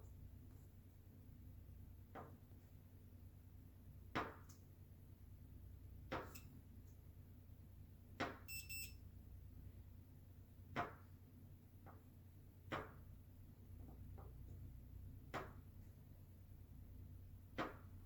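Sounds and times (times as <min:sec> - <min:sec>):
short high beep: 0:08.5 - 0:09.0.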